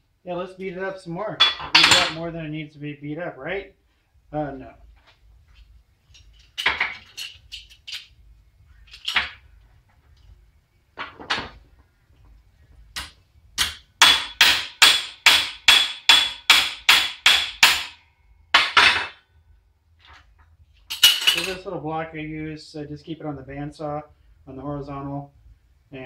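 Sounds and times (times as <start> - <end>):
hammer striking metal hinge: 1.4 - 2.2, 13.0 - 18.0, 18.6 - 19.2.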